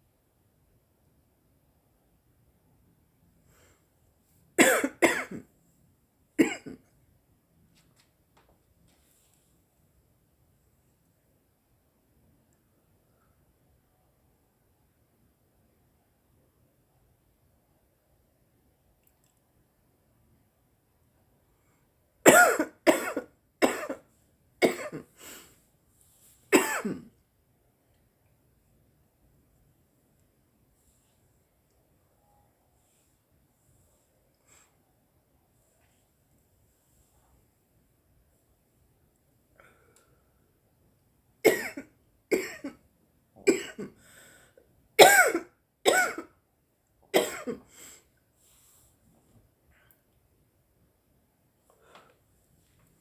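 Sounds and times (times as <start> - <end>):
woman coughing: 4.6 - 5.4, 6.4 - 6.8, 22.3 - 24.0, 24.6 - 25.0, 26.5 - 27.1, 41.5 - 42.8, 43.4 - 44.0, 45.0 - 46.3, 47.2 - 47.6.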